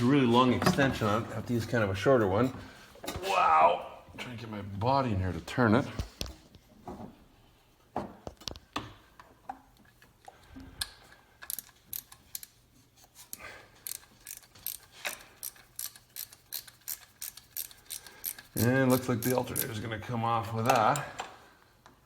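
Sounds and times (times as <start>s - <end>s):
socket ratchet clicking: 11.4s - 12.6s, 13.8s - 19.8s.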